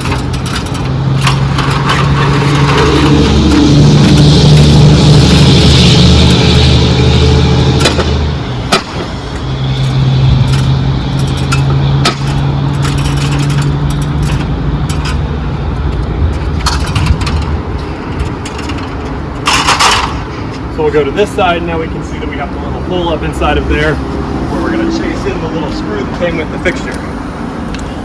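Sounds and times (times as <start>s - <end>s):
motor droning: 0.9s - 14.2s.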